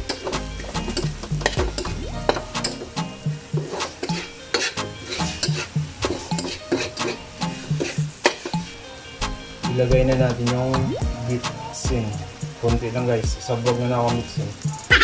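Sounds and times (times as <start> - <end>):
food sizzling in a pan: 1.7 - 9.7.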